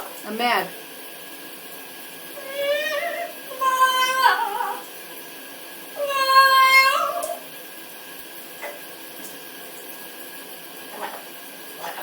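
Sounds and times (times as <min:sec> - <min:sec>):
parrot wavering calls: 0:02.4 - 0:04.9, 0:06.0 - 0:07.4.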